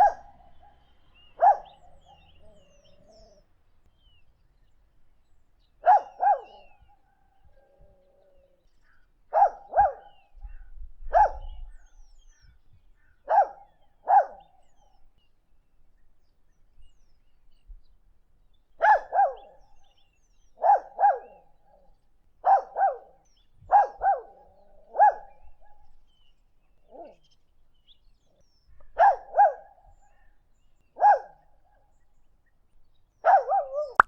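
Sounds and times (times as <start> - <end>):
dog barking: 0.0 - 0.8, 1.4 - 2.3, 5.8 - 6.8, 9.3 - 10.2, 11.1 - 11.6, 13.3 - 14.5, 18.8 - 19.5, 20.6 - 21.4, 22.4 - 25.4, 29.0 - 29.7, 31.0 - 31.4, 33.2 - 34.0.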